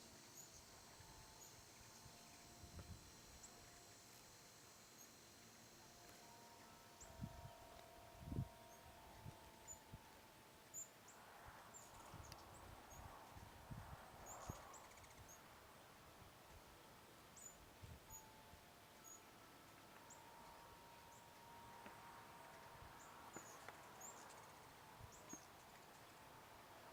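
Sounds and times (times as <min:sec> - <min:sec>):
hummingbird high chip calls: 0:14.4 - 0:15.4.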